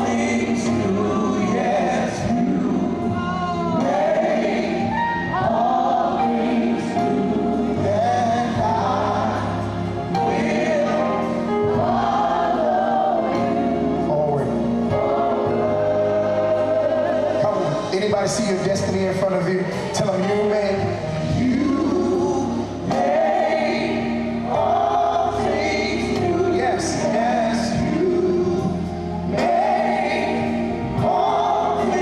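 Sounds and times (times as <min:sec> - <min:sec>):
gospel choir singing: 0:00.0 - 0:32.0.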